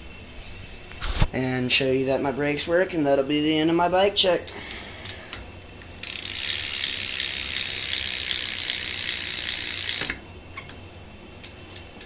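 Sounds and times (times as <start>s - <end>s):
bicycle freewheel ratcheting: 4.4s - 10.2s.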